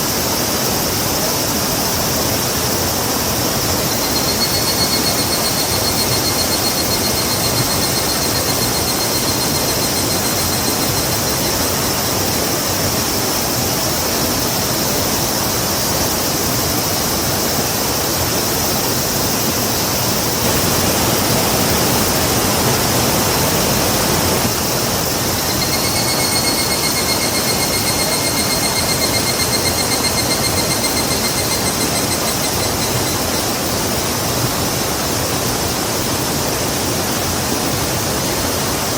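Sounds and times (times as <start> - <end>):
rushing river water: 0.0 - 38.9
high rapidly pulsing trill: 3.6 - 12.4, 23.8 - 34.2.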